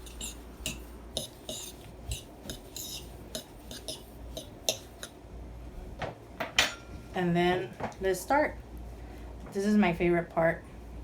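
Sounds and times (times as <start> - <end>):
utensil clinking against bowl: 0.0 - 5.2.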